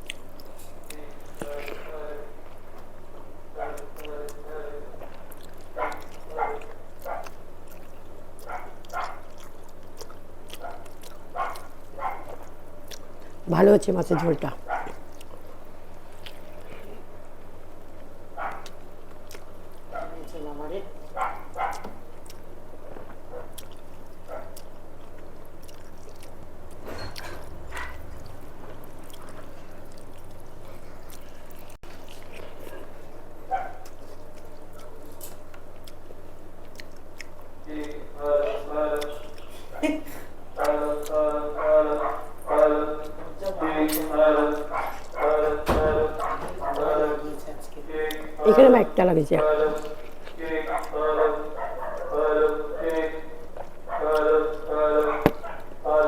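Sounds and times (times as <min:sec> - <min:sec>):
chewing smacks: 0:00.0 - 0:56.0
steady low hum: 0:00.0 - 0:56.0
dog barking: 0:03.5 - 0:13.1, 0:14.0 - 0:15.3, 0:18.2 - 0:22.3, 0:22.9 - 0:24.7, 0:26.9 - 0:28.3, 0:32.3 - 0:35.1, 0:40.6 - 0:47.4, 0:49.4 - 0:56.0.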